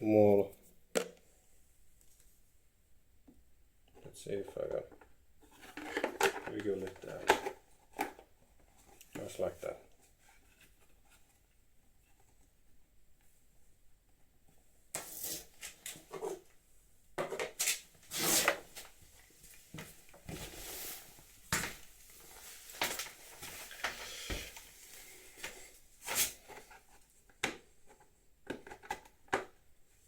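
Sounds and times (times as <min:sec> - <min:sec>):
plastic parts clicking and knocking: 0:04.8 - 0:08.3, 0:27.2 - 0:29.7.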